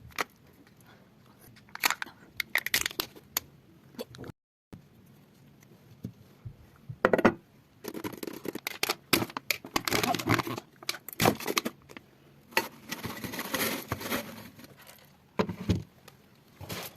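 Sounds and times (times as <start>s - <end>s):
packaging rustling and crinkling: 7.9s - 15.2s.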